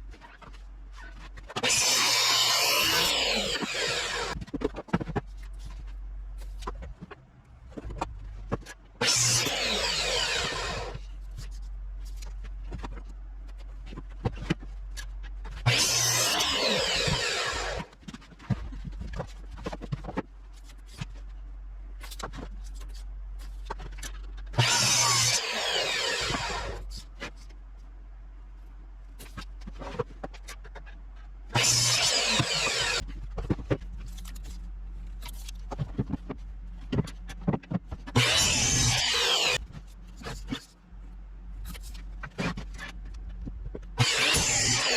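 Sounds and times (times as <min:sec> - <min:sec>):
handheld power tool running: 0:01.6 - 0:04.4, 0:09.0 - 0:11.0, 0:15.6 - 0:17.9, 0:24.6 - 0:26.8, 0:31.5 - 0:33.0, 0:38.2 - 0:39.6, 0:44.0 - 0:44.9.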